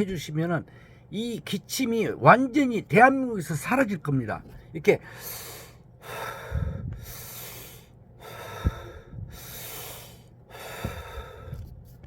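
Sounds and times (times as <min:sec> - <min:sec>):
man breathing deeply: 0:05.0 - 0:11.8
soft low thumps: 0:06.5 - 0:07.1, 0:08.5 - 0:09.5, 0:10.7 - 0:11.9.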